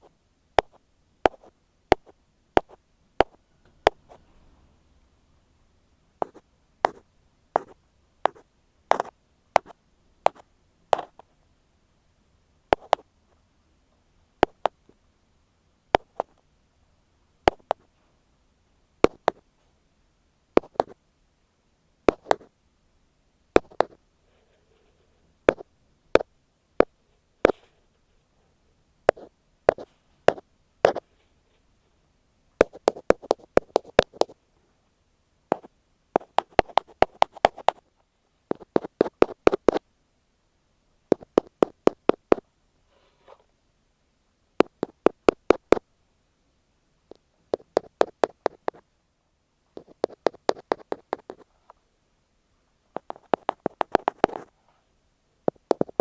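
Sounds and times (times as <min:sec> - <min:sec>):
ear pick tapping on microphone: 0:00.6 - 0:04.1, 0:06.2 - 0:07.0, 0:07.6 - 0:10.4, 0:11.0 - 0:11.2, 0:12.7 - 0:13.0, 0:14.4 - 0:14.8, 0:16.0 - 0:16.4, 0:17.5 - 0:17.8, 0:20.6 - 0:21.0, 0:22.1 - 0:22.5, 0:23.6 - 0:24.0, 0:25.5 - 0:26.9, 0:29.1 - 0:31.0, 0:32.6 - 0:34.4, 0:35.5 - 0:37.8, 0:38.5 - 0:39.8, 0:41.1 - 0:42.4, 0:44.6 - 0:45.8, 0:47.5 - 0:48.8, 0:49.8 - 0:51.4, 0:53.0 - 0:54.4, 0:55.5 - 0:56.0.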